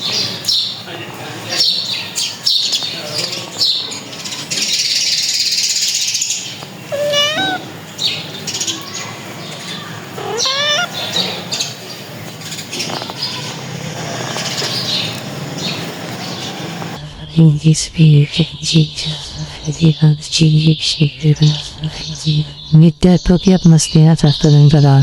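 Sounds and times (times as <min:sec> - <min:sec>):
birds chirping: 0:00.0 - 0:25.0
long wavering bird calls: 0:03.6 - 0:13.6
steady low hum: 0:16.6 - 0:23.8.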